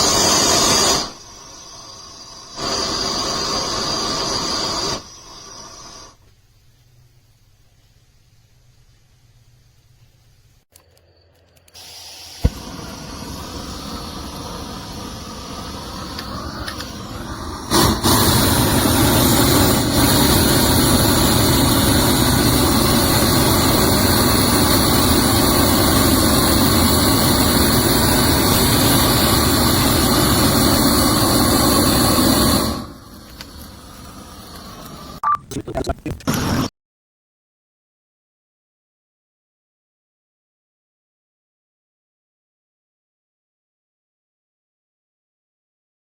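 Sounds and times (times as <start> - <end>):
propane torch burning: 0.0 - 6.4, 11.7 - 35.2, 36.1 - 36.7
torch igniter click: 10.7 - 22.2.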